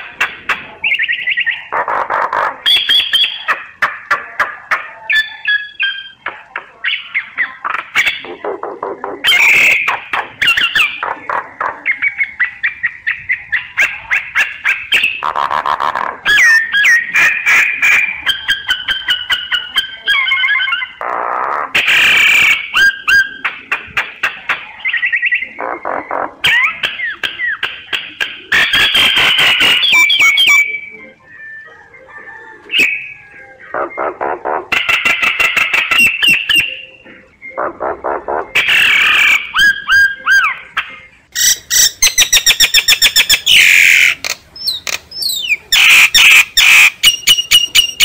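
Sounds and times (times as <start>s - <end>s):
myna squawks and clicks: 0.0s - 36.8s, 37.4s - 48.0s
myna whistled notes: 28.8s - 34.2s.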